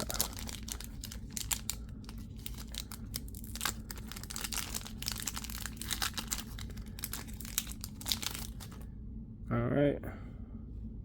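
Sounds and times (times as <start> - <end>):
plastic wrapping crinkling and tearing: 0.0 - 8.8.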